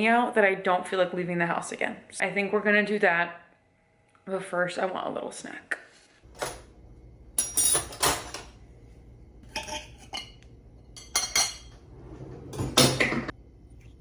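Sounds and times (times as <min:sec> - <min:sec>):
dishes and cutlery clattering: 0:06.3 - 0:06.7, 0:07.4 - 0:08.6, 0:09.4 - 0:13.3.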